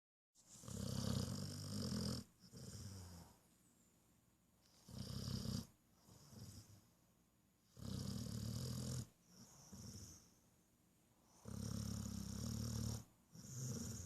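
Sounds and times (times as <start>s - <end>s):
dog snoring: 0.6s - 3.4s, 4.6s - 6.9s, 7.7s - 10.4s, 11.2s - 14.0s.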